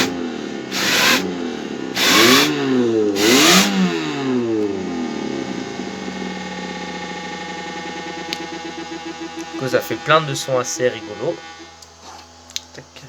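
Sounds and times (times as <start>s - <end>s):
loud rushes of air: 0.0s - 1.3s, 2.0s - 2.6s
fan hum: 0.0s - 13.0s
whine gliding in pitch: 4.8s - 11.9s.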